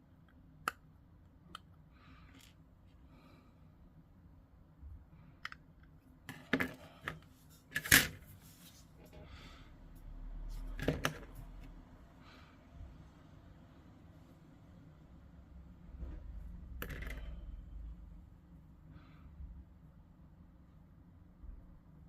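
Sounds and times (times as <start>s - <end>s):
plastic pieces clicking and knocking: 16.8s - 17.4s.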